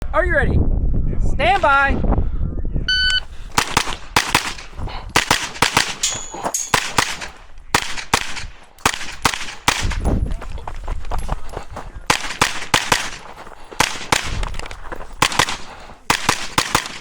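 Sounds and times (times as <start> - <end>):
shot timer beep: 2.9 - 3.2
rapid gunshots: 3.5 - 10.1, 12.0 - 17.0.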